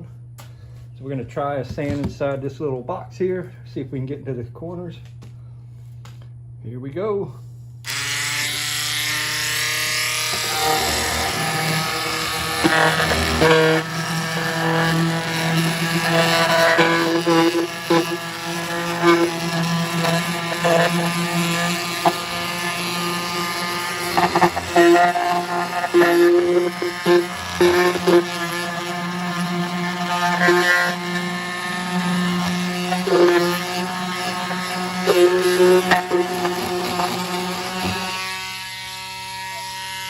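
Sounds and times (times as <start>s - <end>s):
sander buzzing on wood: 7.8s - 40.0s
sander clattering: 7.9s - 40.0s.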